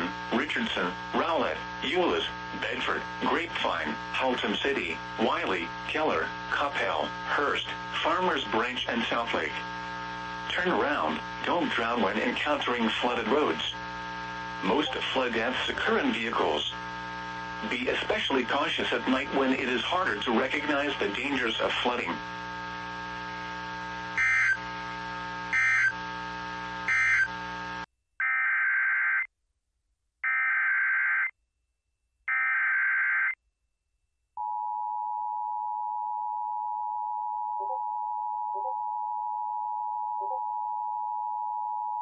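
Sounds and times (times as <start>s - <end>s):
steady hum: 0.0s - 27.9s
digital data bursts: 24.2s - 24.6s, 25.5s - 26.0s
two-tone attention signal: 25.6s - 26.0s.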